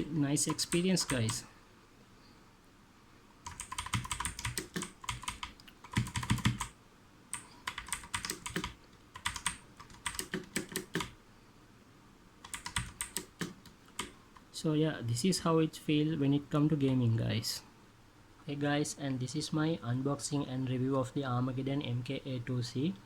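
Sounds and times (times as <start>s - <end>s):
mechanical keyboard clicking: 3.4s - 6.7s, 7.7s - 11.2s, 12.4s - 14.1s.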